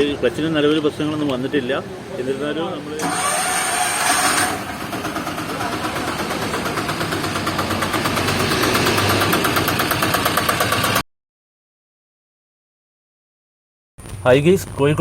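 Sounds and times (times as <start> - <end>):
diesel engine idling: 1.6 - 11.0
diesel engine starting with whine: 2.8 - 11.0.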